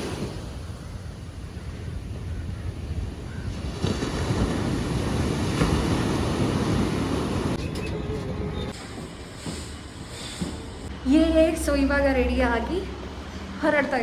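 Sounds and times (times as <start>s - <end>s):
sea waves breaking: 0.0s - 7.6s
wind on microphone: 0.0s - 7.6s.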